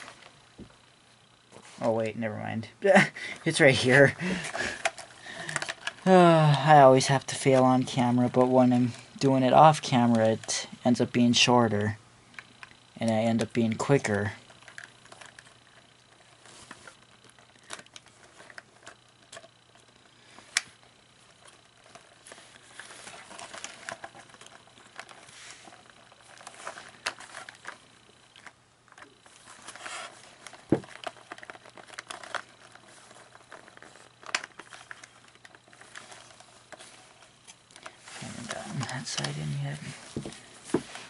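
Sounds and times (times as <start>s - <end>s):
faint steady hum: 0.0s - 41.0s
plastic parts clicking and rustling: 3.3s - 41.0s.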